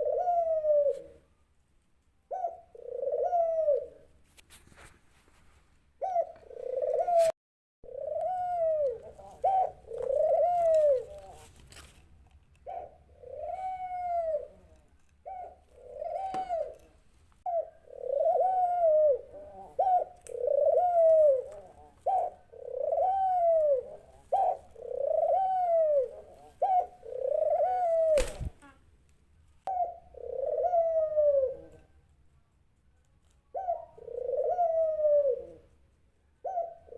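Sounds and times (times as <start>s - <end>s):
dove cooing: 0.0s - 1.3s, 2.3s - 4.1s, 6.0s - 7.3s, 7.9s - 11.6s, 12.6s - 28.8s, 29.7s - 32.0s, 33.5s - 35.8s, 36.4s - 36.9s.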